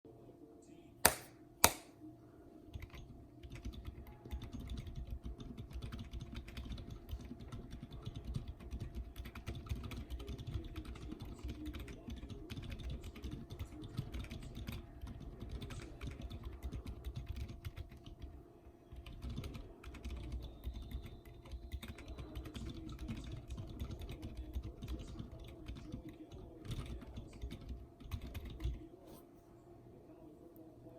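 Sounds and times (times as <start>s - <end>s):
sharp loud clicks: 1.0s - 1.9s
mechanical keyboard typing: 2.7s - 18.3s, 18.9s - 28.8s.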